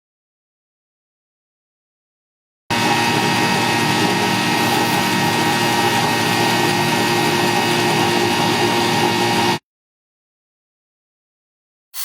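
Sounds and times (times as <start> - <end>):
power tool motor whine: 2.7 - 9.6
rough grinding noise: 2.7 - 9.6.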